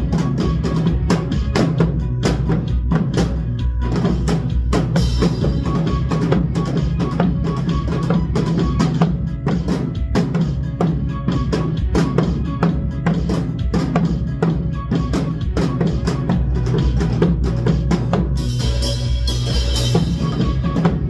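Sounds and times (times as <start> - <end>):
drums struck in steady beat: 0.0 - 21.0
recorded song with heavy bass: 0.0 - 21.0.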